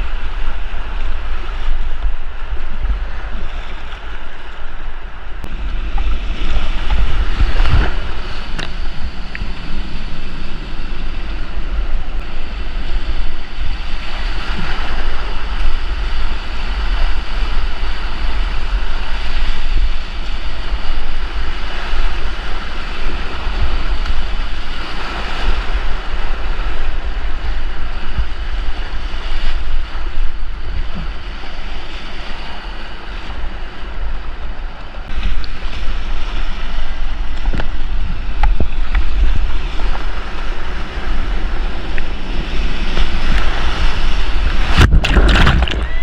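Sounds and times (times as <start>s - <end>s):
wind buffeting microphone: 0.0s - 46.0s
whitewater rushing: 42.6s - 46.0s.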